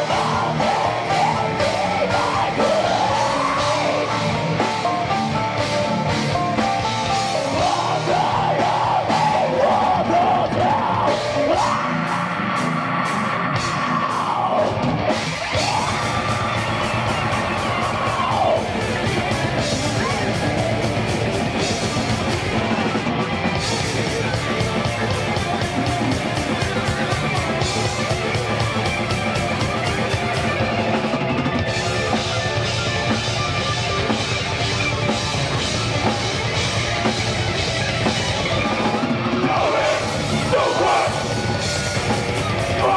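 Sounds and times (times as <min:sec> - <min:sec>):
heavy metal band playing live: 0:00.0 - 0:42.9.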